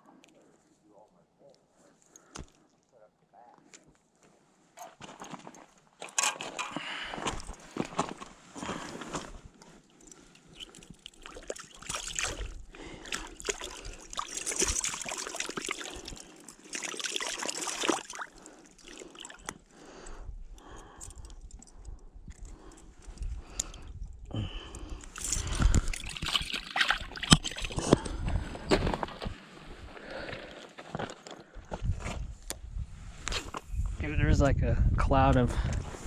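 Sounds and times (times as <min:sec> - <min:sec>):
water sloshing and splashing: 0:06.0 - 0:19.8, 0:25.0 - 0:29.4.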